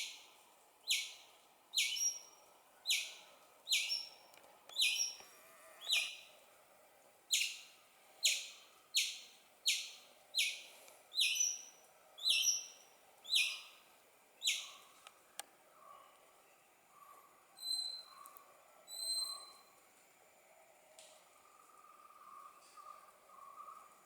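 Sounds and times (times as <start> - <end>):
squirrel chirping: 0.9 - 5.2, 5.9 - 6.3, 7.3 - 13.8, 14.4 - 14.9.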